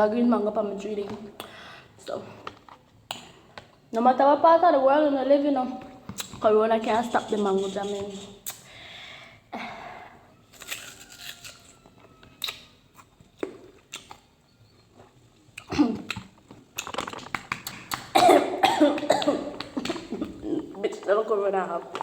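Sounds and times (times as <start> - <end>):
person chewing fruit: 10.5 - 18.1.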